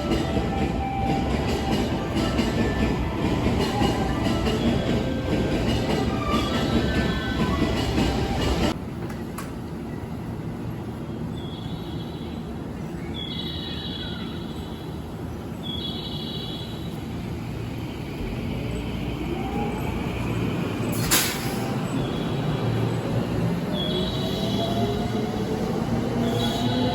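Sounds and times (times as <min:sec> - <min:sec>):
train rumble: 0:00.0 - 0:11.3, 0:16.8 - 0:26.9.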